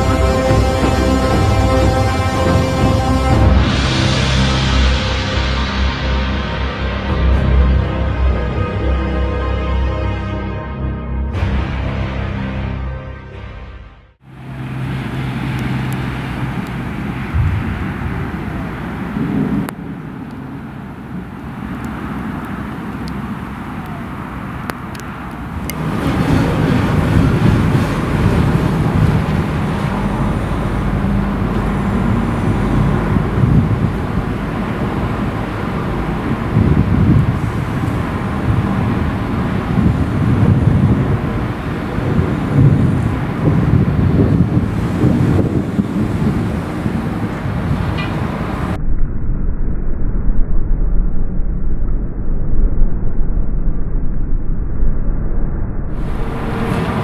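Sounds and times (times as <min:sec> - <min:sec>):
rolling thunder rumble: 0:00.0 - 0:08.9, 0:14.3 - 0:49.1, 0:55.9 - 0:57.0
wind buffeting the microphone: 0:14.4 - 0:48.8, 0:55.9 - 0:57.0.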